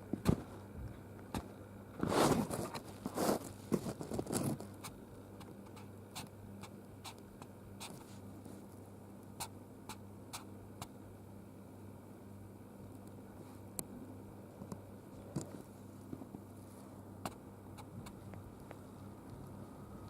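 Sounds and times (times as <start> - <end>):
hamster scratching in bedding: 2.0 - 4.9.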